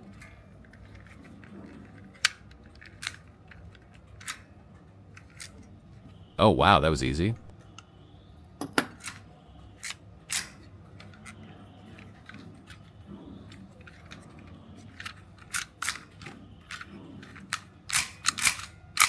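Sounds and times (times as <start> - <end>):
plastic toy pistol clicks: 9.8 - 11.2, 15.0 - 19.0.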